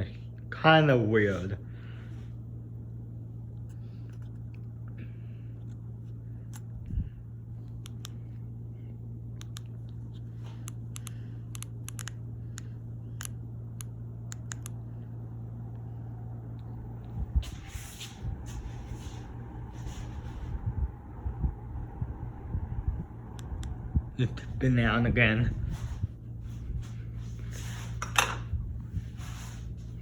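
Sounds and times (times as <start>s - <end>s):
ceiling fan humming: 0.0s - 30.0s
light clicks: 10.6s - 14.8s.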